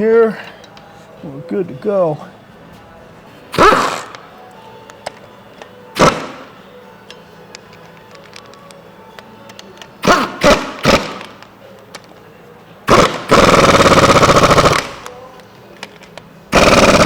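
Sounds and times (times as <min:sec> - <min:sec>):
pneumatic impact wrench hammering: 0:03.6 - 0:04.3, 0:06.0 - 0:06.6, 0:10.0 - 0:11.5, 0:12.9 - 0:15.1, 0:16.5 - 0:17.0.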